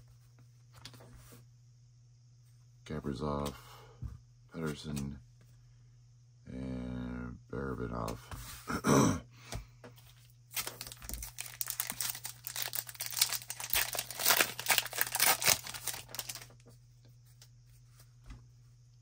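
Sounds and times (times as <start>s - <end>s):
pack wrapper tearing and crinkling: 10.5s - 16.6s.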